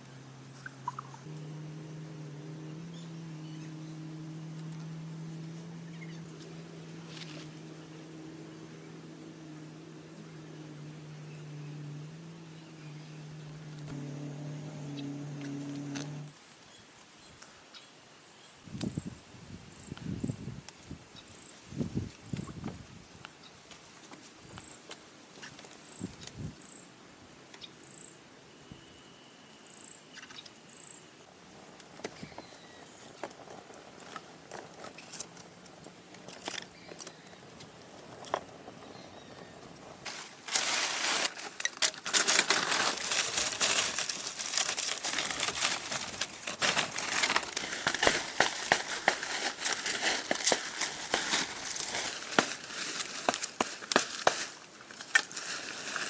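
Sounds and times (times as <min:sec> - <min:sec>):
dense crackling and rustling: 0:31.6 - 0:56.0.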